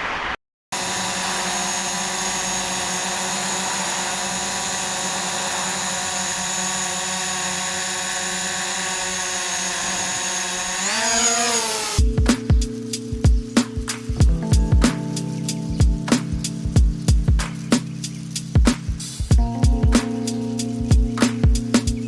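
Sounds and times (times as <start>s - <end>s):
drone propellers whining: 0.8s - 12.0s
music with steady beat: 12.0s - 22.0s.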